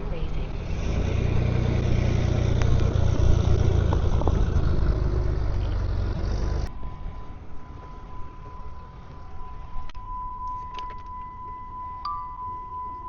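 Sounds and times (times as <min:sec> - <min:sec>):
truck engine droning: 0:00.0 - 0:13.0
high-pitched beep tone: 0:06.7 - 0:13.0.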